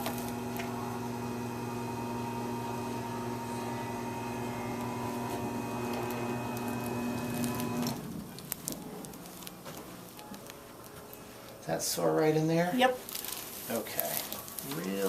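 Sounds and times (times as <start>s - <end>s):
small electric motor humming: 0.0s - 8.0s.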